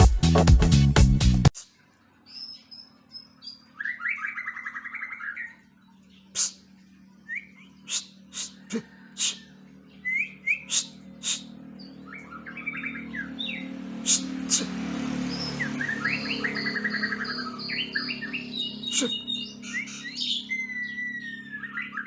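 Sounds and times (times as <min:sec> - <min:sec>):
bird singing whistles and warbles: 0:02.3 - 0:14.3, 0:15.3 - 0:22.0.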